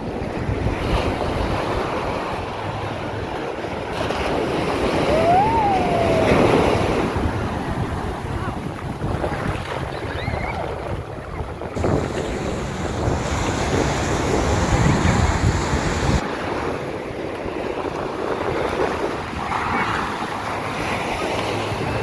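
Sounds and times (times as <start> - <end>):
sea waves breaking: 0.0 - 10.3, 11.6 - 17.8
wind rumbling on microphone: 0.0 - 22.0.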